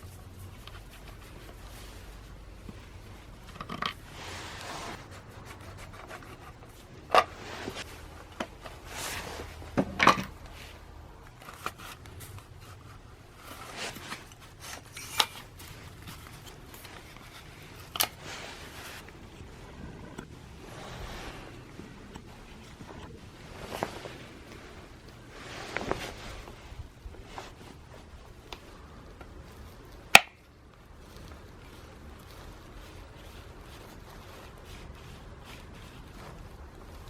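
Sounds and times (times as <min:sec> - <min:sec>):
scrapes and rubs of handling parts: 0:00.0 - 0:37.0.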